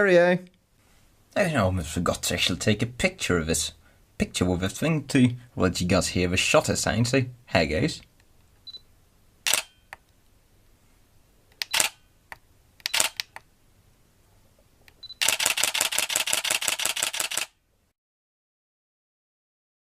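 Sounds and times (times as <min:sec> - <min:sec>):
camera beep: 0:09.5 - 0:10.0, 0:11.6 - 0:12.1, 0:12.8 - 0:13.3, 0:15.0 - 0:17.5
camera shutter clicking: 0:09.5 - 0:10.0, 0:11.6 - 0:12.0, 0:12.8 - 0:13.4, 0:15.2 - 0:17.6.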